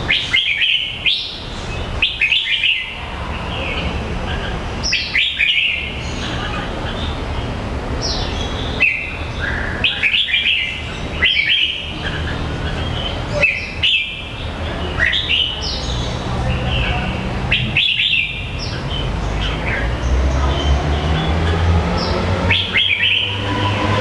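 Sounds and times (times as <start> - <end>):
bird chirping and whistling: 0.0 - 3.0, 4.8 - 6.1, 8.0 - 14.4, 17.5 - 20.0, 22.0 - 23.9.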